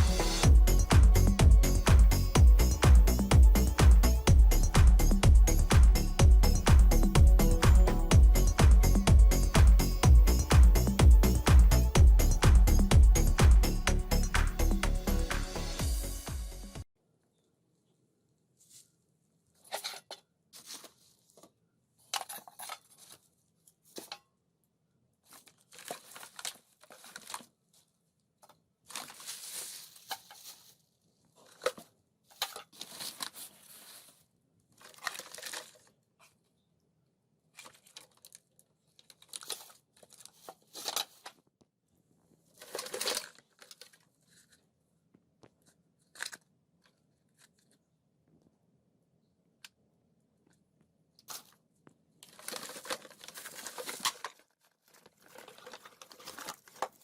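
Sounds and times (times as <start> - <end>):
plastic phone parts crackling: 25.2 - 27.7, 34.7 - 36.0, 37.5 - 41.4, 42.5 - 44.6, 52.2 - 57.0.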